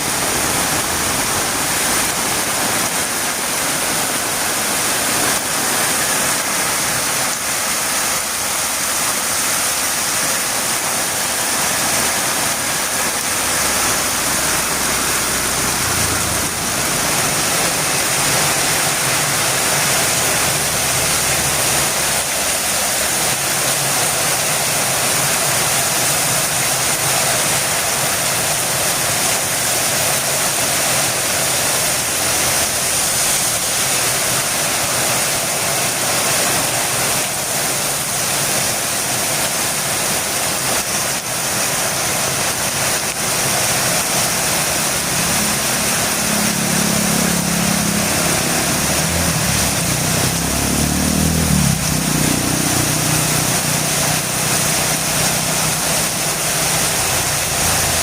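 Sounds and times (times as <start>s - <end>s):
heavy rain hissing: 0.0s - 58.0s.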